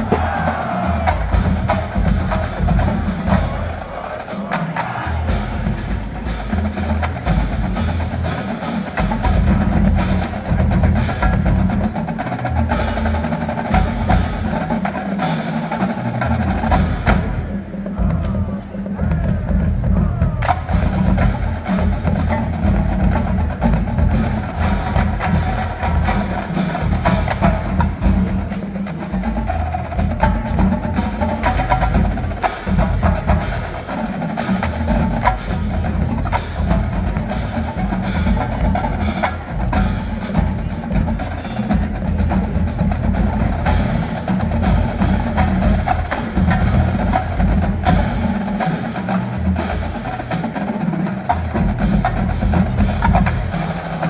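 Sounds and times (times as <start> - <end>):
snare drum and stick strikes: 0.0 - 0.6
low drums: 0.0 - 54.0.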